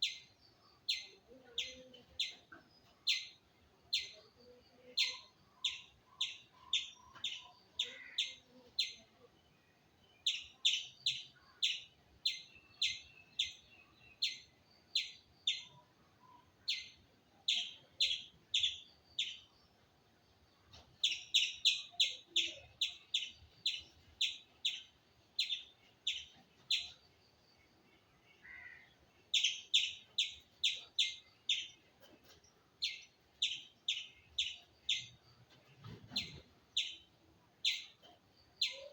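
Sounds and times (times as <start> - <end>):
squirrel chirping: 4.9 - 9.1, 10.2 - 19.5, 21.0 - 27.0, 28.4 - 31.9, 32.5 - 35.2, 36.1 - 38.9.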